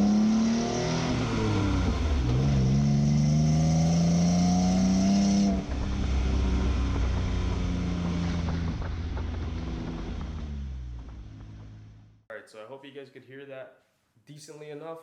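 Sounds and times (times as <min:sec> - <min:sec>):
car exhaust revving: 0:00.0 - 0:12.2.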